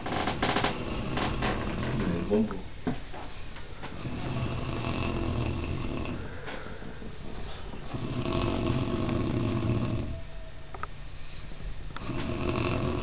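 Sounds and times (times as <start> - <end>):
person snoring: 3.9 - 6.3, 7.9 - 10.2, 12.0 - 13.0.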